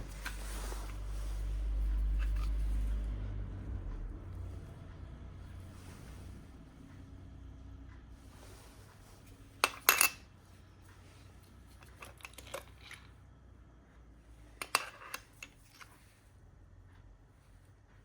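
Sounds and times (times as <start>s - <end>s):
metal hand tools clinking: 9.6s - 10.2s.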